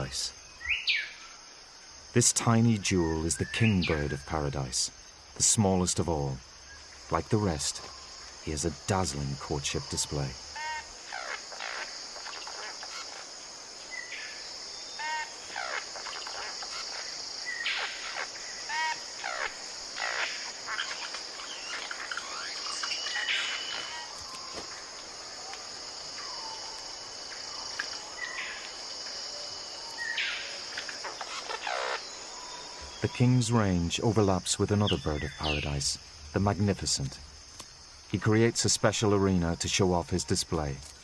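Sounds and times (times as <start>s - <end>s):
bird calls: 0.0s - 1.4s, 6.6s - 37.2s
insect drone: 0.0s - 41.0s.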